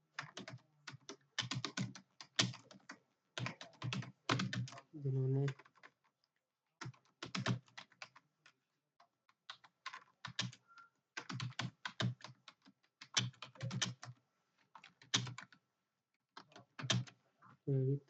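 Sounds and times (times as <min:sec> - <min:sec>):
fast typing on keyboard: 0:00.0 - 0:06.0, 0:06.8 - 0:08.6, 0:09.3 - 0:10.6, 0:11.2 - 0:15.6, 0:16.4 - 0:17.2.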